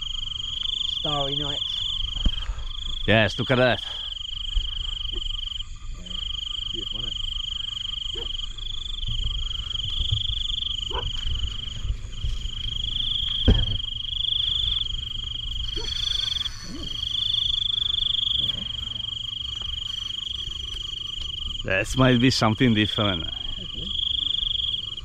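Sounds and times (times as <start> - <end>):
frogs and insects trilling: 0.0 - 25.0
low rumble: 8.5 - 22.0.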